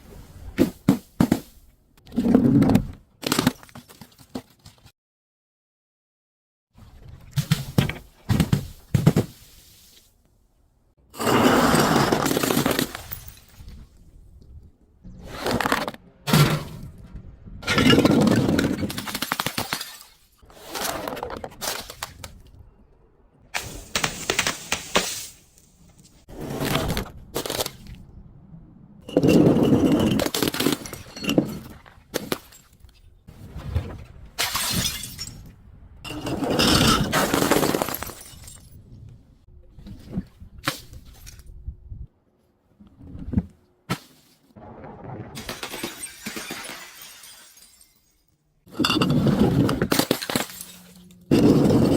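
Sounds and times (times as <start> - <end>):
glass bottles shattering and crunching: 11.5 - 13.8, 17.7 - 20.4, 29.1 - 32.8, 34.4 - 35.5, 36.1 - 38.8, 45.4 - 51.9.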